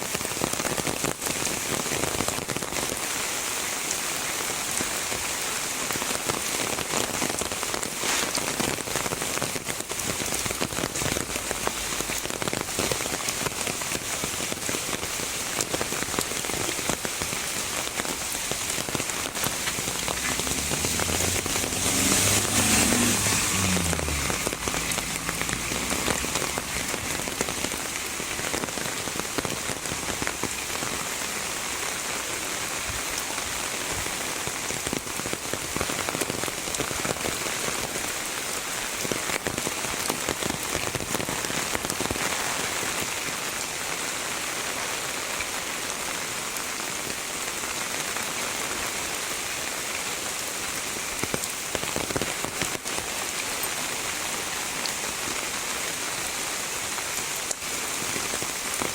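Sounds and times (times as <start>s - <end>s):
heavy rain hissing: 0.0s - 58.9s
sharp raindrop hits: 5.9s - 44.0s.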